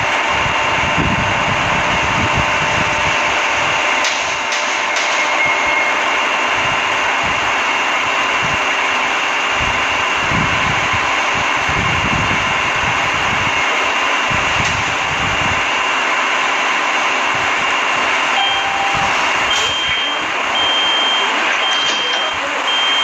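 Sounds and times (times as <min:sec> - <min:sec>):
light-rail train running: 0:00.0 - 0:23.0
high electronic beep: 0:18.4 - 0:23.0.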